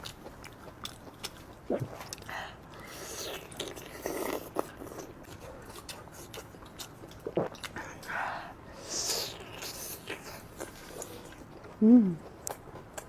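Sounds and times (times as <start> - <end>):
person chewing crunchy food: 0.0 - 8.2, 9.1 - 13.0.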